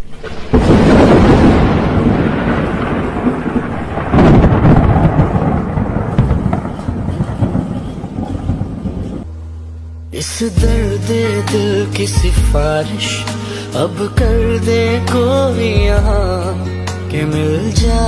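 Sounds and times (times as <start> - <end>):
thunder rumbling: 0.0 - 9.3.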